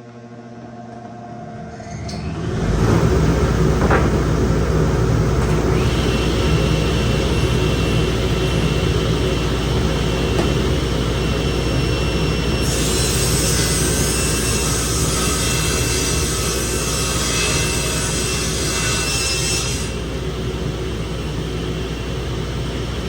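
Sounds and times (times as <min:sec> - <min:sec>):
power tool motor running: 0:02.1 - 0:16.8.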